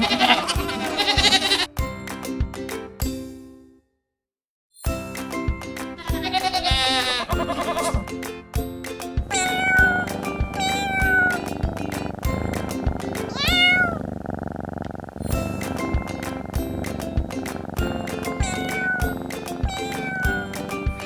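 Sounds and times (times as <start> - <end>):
cat meowing: 0.0 - 1.7, 6.2 - 8.0, 9.3 - 21.0
children's music with steady beat: 0.0 - 3.8, 4.8 - 13.8, 15.3 - 21.0
quavering high call: 15.2 - 21.0.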